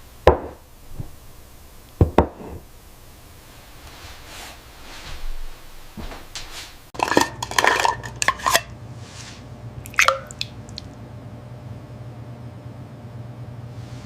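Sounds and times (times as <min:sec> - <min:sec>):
steady low hum: 0:00.0 - 0:14.0
dishes and cutlery clinking: 0:07.0 - 0:08.7.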